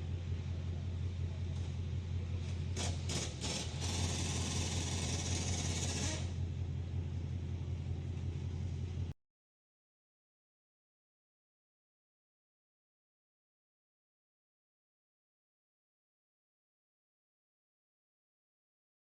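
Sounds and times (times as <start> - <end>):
car engine idling: 0.0 - 9.1
loud hiss of air spray: 2.8 - 6.4.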